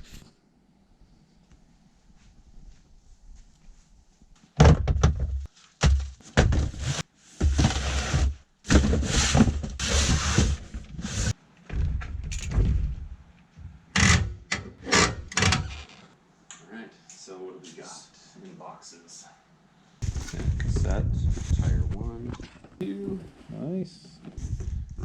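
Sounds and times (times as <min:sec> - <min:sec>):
handling thumps and scrapes: 0:04.6 - 0:13.0.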